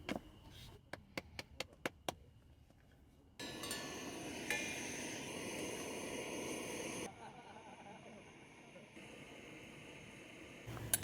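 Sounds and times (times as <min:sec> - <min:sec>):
steady outdoor hiss: 0:03.4 - 0:11.0.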